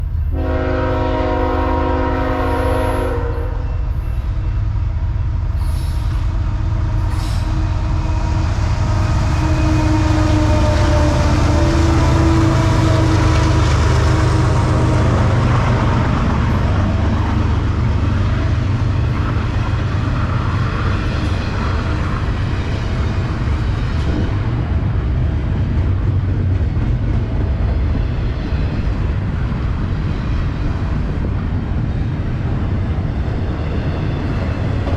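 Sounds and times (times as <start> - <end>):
freight train rumbling past: 0.0 - 34.9
locomotive air horn: 0.3 - 3.8, 7.0 - 13.6.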